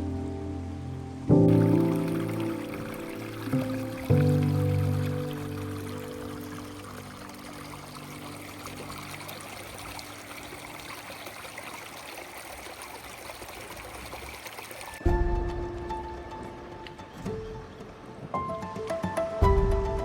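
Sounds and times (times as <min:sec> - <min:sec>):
background music: 0:00.0 - 0:10.8, 0:15.0 - 0:20.0
running water rushing: 0:01.3 - 0:18.3.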